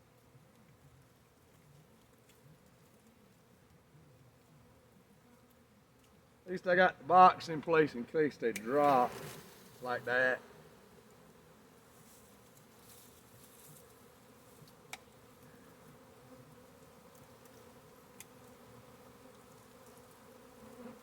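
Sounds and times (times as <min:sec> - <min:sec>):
bee swarm buzzing: 0:06.6 - 0:21.0.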